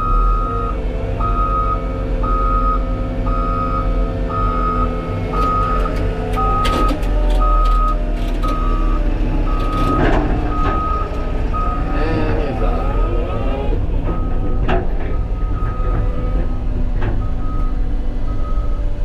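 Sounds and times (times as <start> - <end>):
diesel engine running: 0.0 - 19.0
backup alarm beeping: 1.3 - 12.2.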